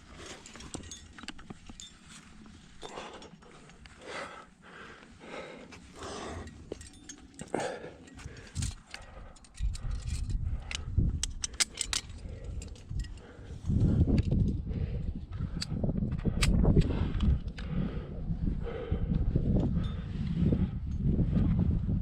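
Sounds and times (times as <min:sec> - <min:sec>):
climbing gear clinking: 0:00.0 - 0:17.8, 0:19.6 - 0:21.1
sharp metallic clicks: 0:08.1 - 0:13.2.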